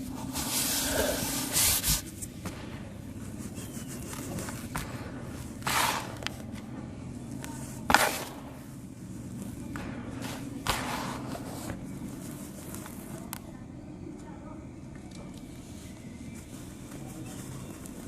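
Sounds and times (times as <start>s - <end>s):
dried cement lumps crunching: 0.1s - 13.4s.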